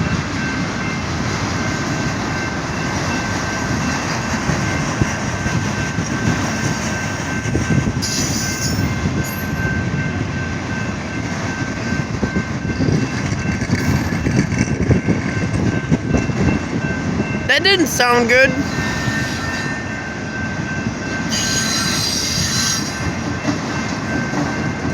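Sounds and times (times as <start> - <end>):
freight train rolling past: 0.0 - 24.9.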